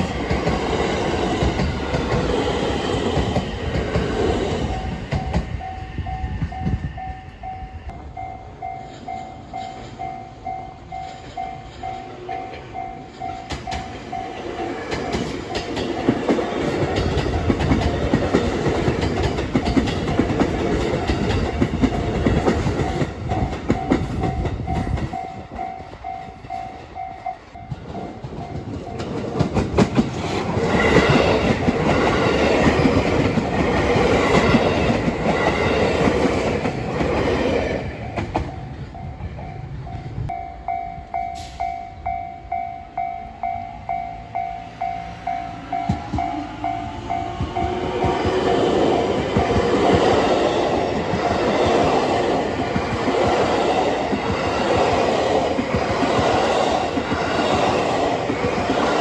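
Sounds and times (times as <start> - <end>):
crossing warning bell ringing: 4.4 - 29.6, 30.8 - 59.0
train wheels clattering over rail joints: 11.0 - 27.0, 27.6 - 38.6.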